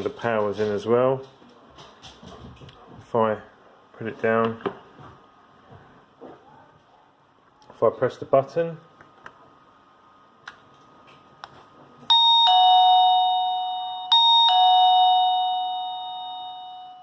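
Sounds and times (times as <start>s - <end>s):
doorbell button clicks: 12.1s - 17.0s
doorbell ding-dong chime: 12.1s - 17.0s.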